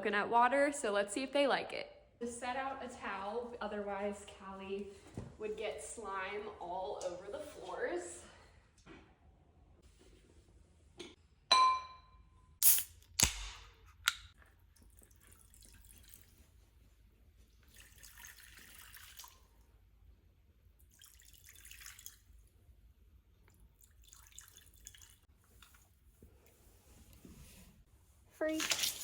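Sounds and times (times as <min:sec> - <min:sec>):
liquid pouring into bowls: 0:14.5 - 0:16.6, 0:17.6 - 0:19.7, 0:20.8 - 0:22.6, 0:23.4 - 0:26.0.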